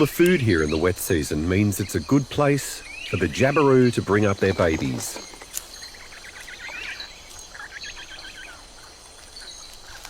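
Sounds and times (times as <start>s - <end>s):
birds chirping: 0.0s - 10.0s
high insect drone: 0.0s - 10.0s.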